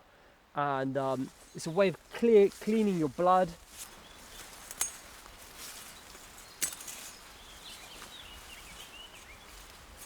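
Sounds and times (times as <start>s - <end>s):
faint high bird chirping: 5.8s - 9.7s.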